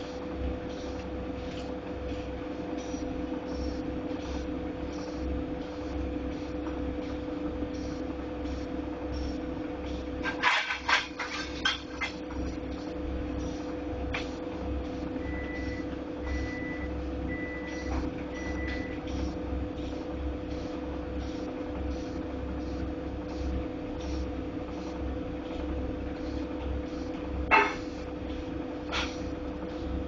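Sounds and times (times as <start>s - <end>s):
washing machine humming and throbbing: 0.0s - 30.0s.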